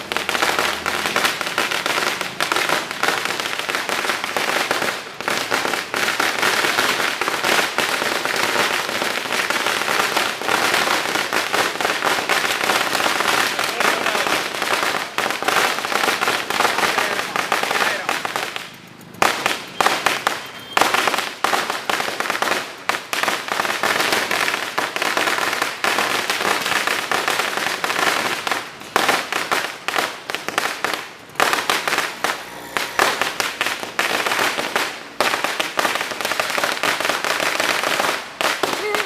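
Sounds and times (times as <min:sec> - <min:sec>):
string of firecrackers banging: 0:00.0 - 0:39.0.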